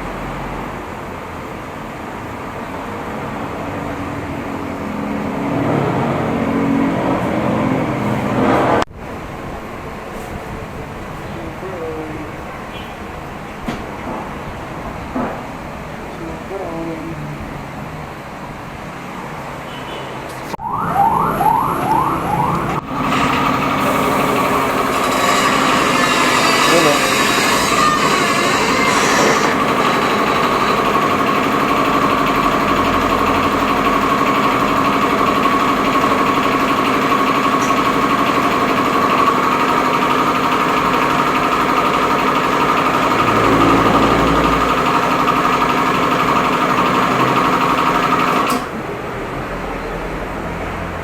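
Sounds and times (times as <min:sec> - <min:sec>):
siren-like whoop: 0:20.6 - 0:22.9
vehicle engine running: 0:21.5 - 0:25.0, 0:29.5 - 0:48.5.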